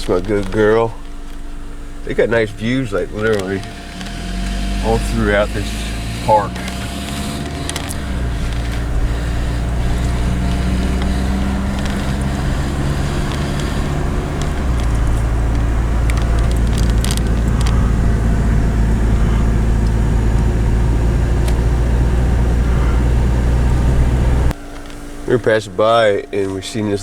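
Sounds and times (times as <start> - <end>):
car engine and road hum: 0.0 - 27.0
portable heater running: 0.0 - 27.0.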